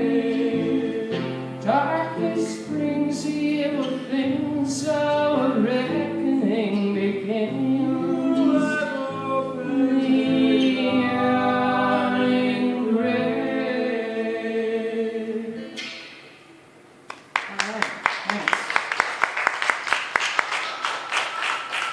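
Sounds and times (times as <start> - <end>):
slow song sung live: 0.0 - 16.4.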